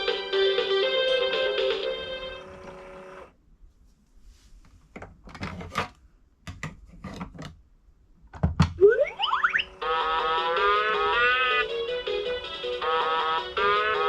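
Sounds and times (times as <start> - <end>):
plastic clicks and knocks: 6.4 - 7.6
electronic toy tune: 8.8 - 14.0.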